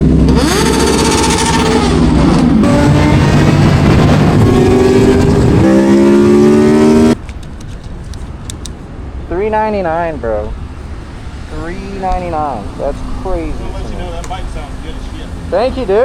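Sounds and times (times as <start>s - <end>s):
motorcycle engine revving: 0.0s - 7.2s.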